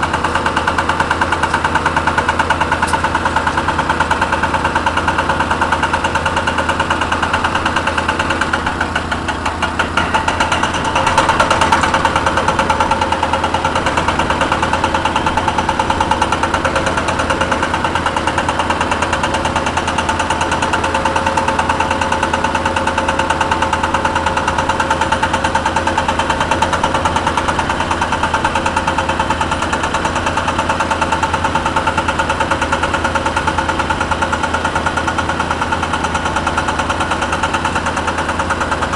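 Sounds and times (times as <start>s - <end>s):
excavator diesel engine rattling: 0.0s - 38.9s.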